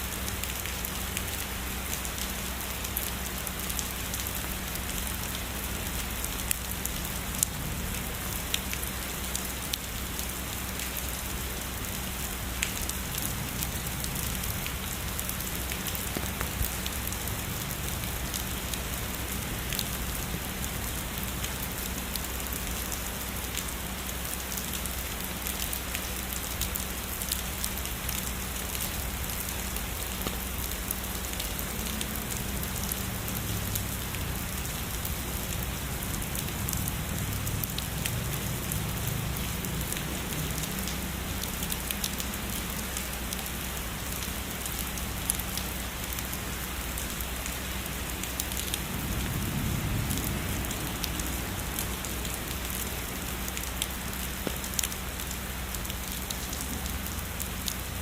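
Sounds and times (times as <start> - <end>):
heavy rainfall: 0.0 - 58.0.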